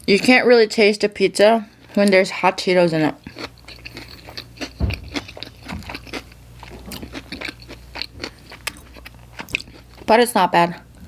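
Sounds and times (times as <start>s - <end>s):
person chewing crunchy food: 3.1s - 10.2s
dull thump: 4.8s - 5.9s.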